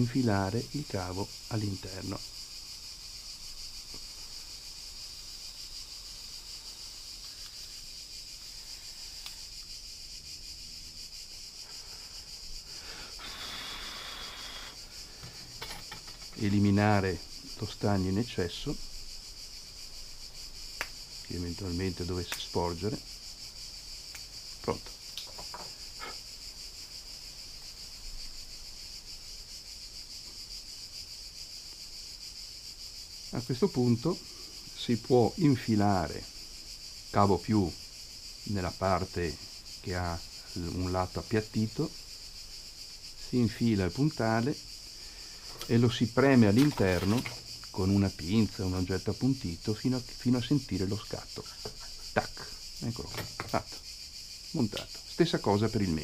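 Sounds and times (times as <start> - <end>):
insects chirring: 0.0 - 56.0
soldering torch hissing: 11.5 - 16.3.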